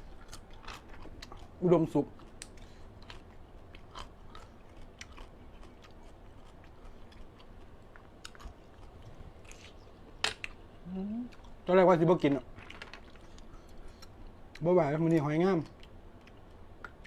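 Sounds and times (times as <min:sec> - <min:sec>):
close chewing and biting: 0:00.0 - 0:09.9.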